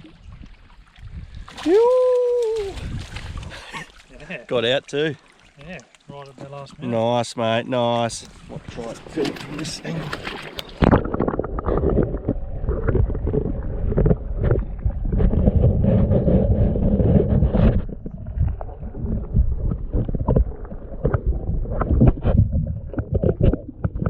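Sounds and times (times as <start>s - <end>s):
wind buffeting microphone: 0.2s - 3.6s, 10.7s - 24.0s.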